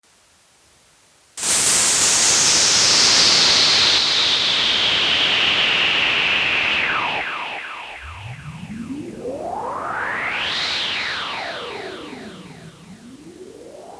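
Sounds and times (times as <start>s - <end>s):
synthesizer noise hiss sweeping: 1.4s - 13.9s
upward sweeping synth tone: 7.6s - 13.9s.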